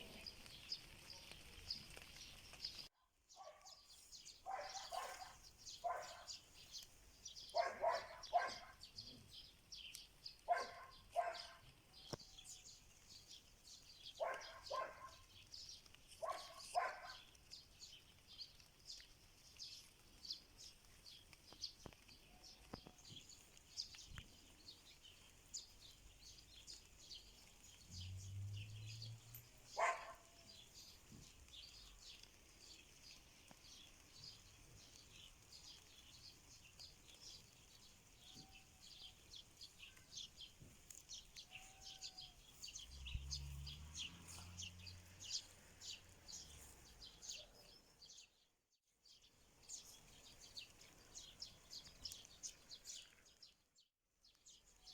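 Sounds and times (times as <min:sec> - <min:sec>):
birds chirping and singing: 0:00.0 - 0:48.4
dog barking: 0:03.4 - 0:03.8, 0:04.4 - 0:06.4, 0:07.5 - 0:08.8, 0:10.5 - 0:11.7, 0:14.2 - 0:15.3, 0:16.2 - 0:17.3, 0:29.7 - 0:30.4.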